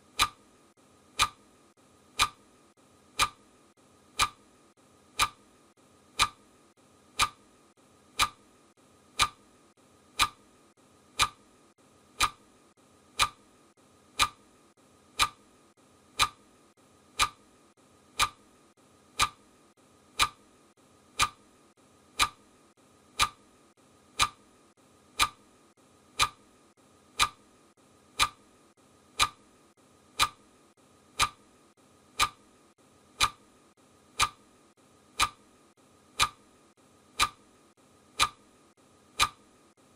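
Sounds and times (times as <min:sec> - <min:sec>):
clock ticking: 0:00.0 - 0:00.4, 0:01.1 - 0:01.4, 0:02.1 - 0:02.5, 0:03.1 - 0:03.4, 0:04.1 - 0:04.5, 0:05.1 - 0:05.4, 0:06.1 - 0:06.4, 0:07.1 - 0:07.4, 0:08.1 - 0:08.4, 0:09.1 - 0:09.5, 0:10.1 - 0:10.4, 0:11.1 - 0:11.5, 0:12.1 - 0:12.5, 0:13.1 - 0:13.5, 0:14.1 - 0:14.5, 0:15.1 - 0:15.4, 0:16.1 - 0:16.4, 0:17.1 - 0:17.4, 0:18.1 - 0:18.5, 0:19.1 - 0:19.4, 0:20.1 - 0:20.4, 0:21.1 - 0:21.4, 0:22.1 - 0:22.4, 0:23.1 - 0:23.4, 0:24.1 - 0:24.4, 0:25.2 - 0:25.4, 0:26.2 - 0:26.4, 0:27.1 - 0:27.4, 0:28.1 - 0:28.4, 0:29.1 - 0:29.4, 0:30.2 - 0:30.4, 0:31.1 - 0:31.4, 0:32.2 - 0:32.4, 0:33.2 - 0:33.4, 0:34.2 - 0:34.4, 0:35.2 - 0:35.4, 0:36.2 - 0:36.4, 0:37.2 - 0:37.4, 0:38.2 - 0:38.4, 0:39.1 - 0:39.4.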